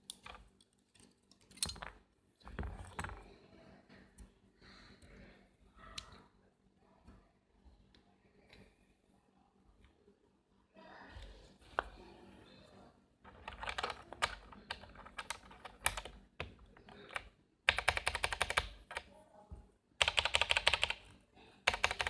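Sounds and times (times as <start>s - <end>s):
mechanical keyboard typing: 13.3s - 19.1s, 20.0s - 21.1s, 21.7s - 22.0s.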